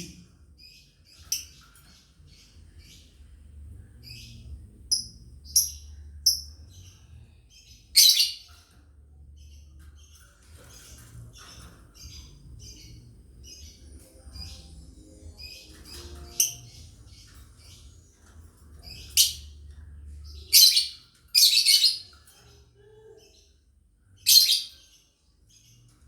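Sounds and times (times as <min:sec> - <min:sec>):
birds chirping: 0:00.0 - 0:26.0
birds screeching harshly: 0:06.6 - 0:08.7, 0:20.4 - 0:23.5, 0:24.2 - 0:24.9.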